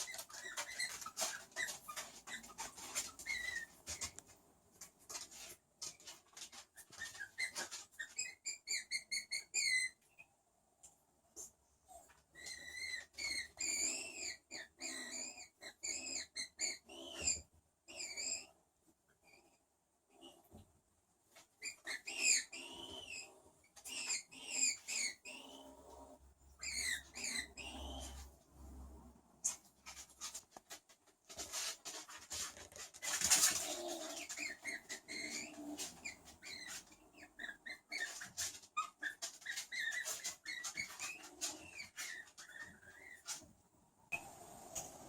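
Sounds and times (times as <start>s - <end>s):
skunk squeaking: 0.0s - 4.3s, 5.8s - 10.3s, 12.1s - 18.6s, 21.4s - 28.3s, 31.5s - 43.5s.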